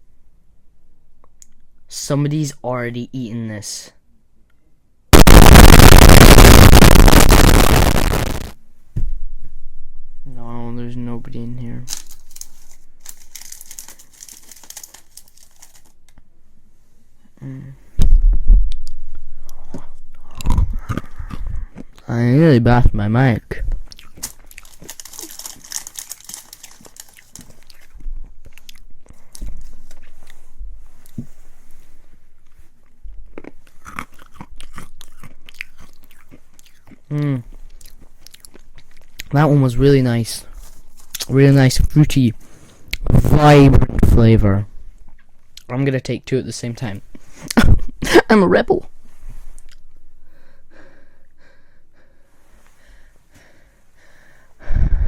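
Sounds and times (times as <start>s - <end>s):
person chewing and crunching: 11.9s - 15.9s, 18.7s - 22.1s, 23.8s - 30.4s, 32.4s - 39.4s
person breathing while eating: 19.4s - 22.0s, 50.2s - 55.0s.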